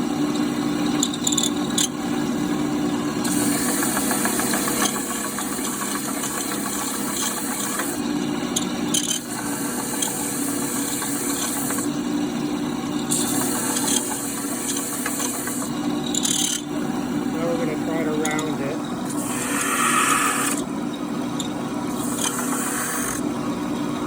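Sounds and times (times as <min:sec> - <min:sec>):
power sander motor running: 0:00.0 - 0:20.9, 0:21.5 - 0:24.0
wood sanding hiss: 0:19.2 - 0:20.6, 0:22.2 - 0:23.2.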